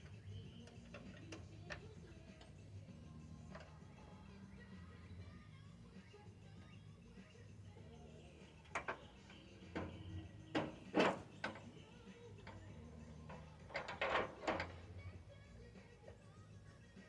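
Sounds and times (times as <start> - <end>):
metal tools knocking and clattering: 9.8 - 11.7.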